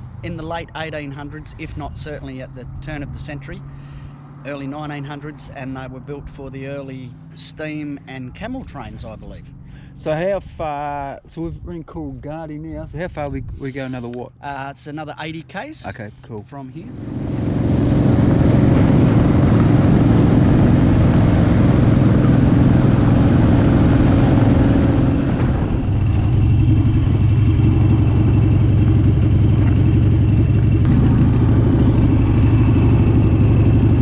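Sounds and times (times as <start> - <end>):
wind noise on microphone: 10.2 - 13.9, 17.0 - 29.7
motorcycle engine running: 16.9 - 34.0.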